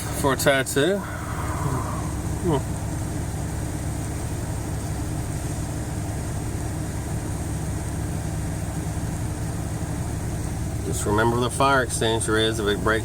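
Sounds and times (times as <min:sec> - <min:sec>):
air-conditioning fan: 0:00.0 - 0:13.0
car engine idling: 0:00.0 - 0:13.0.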